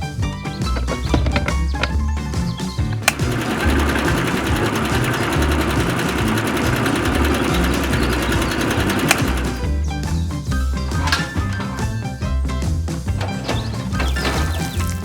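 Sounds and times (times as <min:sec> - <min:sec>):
background music: 0:00.0 - 0:15.0
click: 0:02.9 - 0:09.6, 0:10.9 - 0:12.0
small motor buzzing: 0:03.0 - 0:09.6.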